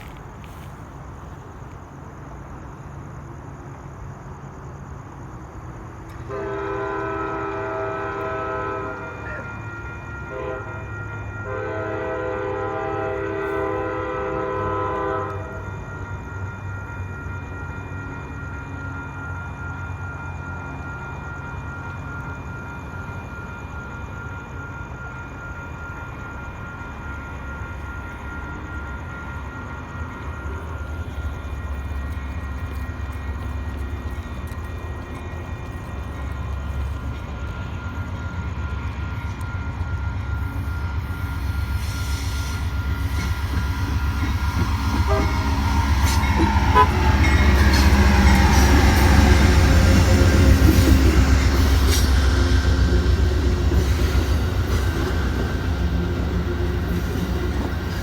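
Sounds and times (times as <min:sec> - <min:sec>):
low rumble of passing train: 0:00.0 - 0:58.0
locomotive horn blasts: 0:06.2 - 0:15.7, 0:44.2 - 0:54.1.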